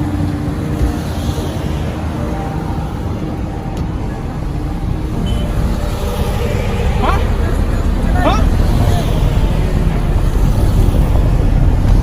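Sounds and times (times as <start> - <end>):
low rumble of vehicle engines: 0.0 - 12.0.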